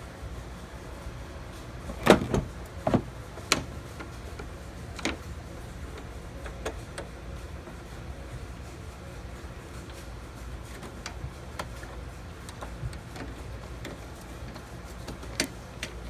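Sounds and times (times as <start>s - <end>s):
steady low hum: 0.0s - 16.0s
sharp clicks and knocks: 1.9s - 4.2s.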